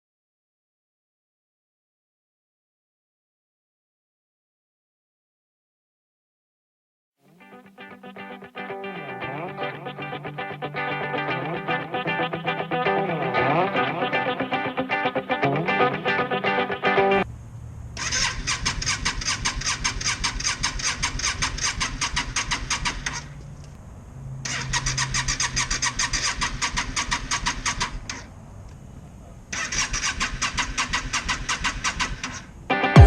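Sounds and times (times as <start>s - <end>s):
motorcycle engine cranking: 18.0s - 23.3s, 24.5s - 28.3s, 29.5s - 32.5s.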